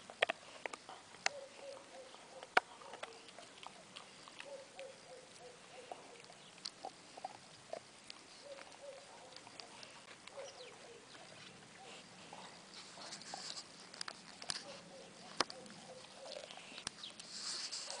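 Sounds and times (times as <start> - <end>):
dog chewing on a bone: 0.0 - 18.0.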